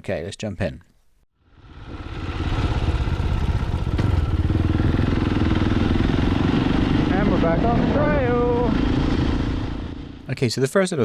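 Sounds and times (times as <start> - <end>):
motorcycle engine running: 1.4 - 10.2.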